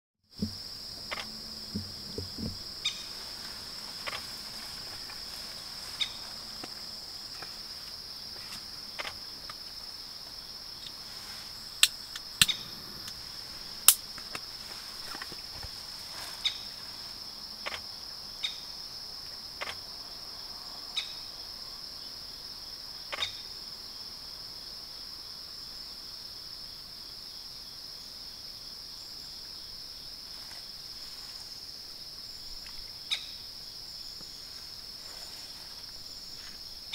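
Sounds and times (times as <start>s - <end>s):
insects trilling: 0.3s - 36.9s
sharp clicks: 0.4s - 2.6s.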